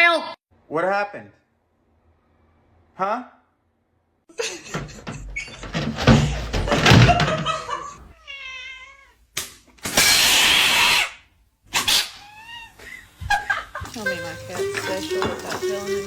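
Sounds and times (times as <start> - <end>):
knocks and clatter: 4.6 - 7.8
cat meowing: 8.1 - 9.2, 11.9 - 12.8.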